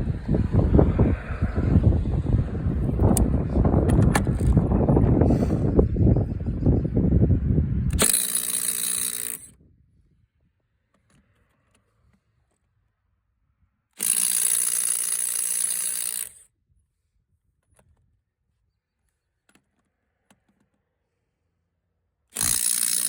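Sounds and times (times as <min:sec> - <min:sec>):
socket and nut clicks: 0:03.9 - 0:04.6, 0:07.9 - 0:09.5
impact wrench hammering: 0:07.9 - 0:09.5, 0:14.0 - 0:16.4, 0:22.4 - 0:23.0.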